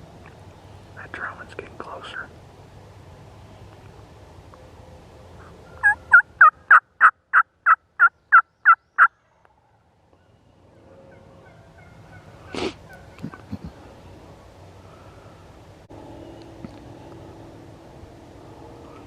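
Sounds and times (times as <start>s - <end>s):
turkey yelping: 5.4s - 9.1s, 11.1s - 13.8s.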